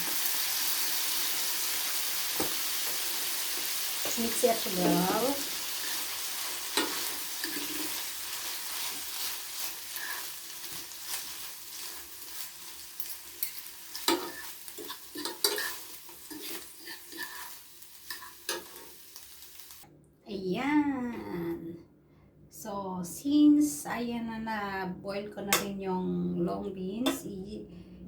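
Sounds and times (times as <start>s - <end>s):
sauce sizzling in a pan: 0.0s - 19.8s
utensil scraping a pan: 5.7s - 19.0s.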